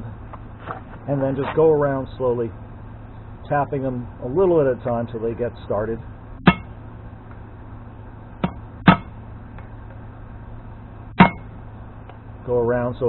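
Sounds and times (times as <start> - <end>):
hammer tapping a drift: 6.4 - 7.4, 8.4 - 10.0, 11.1 - 12.2.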